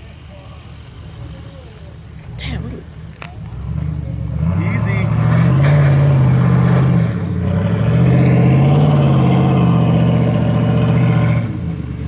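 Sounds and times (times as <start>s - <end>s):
engine revving hard: 3.6s - 11.8s.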